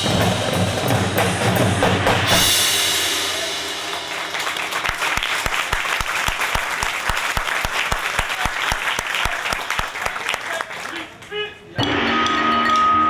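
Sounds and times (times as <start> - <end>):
audience applauding: 3.4 - 11.4.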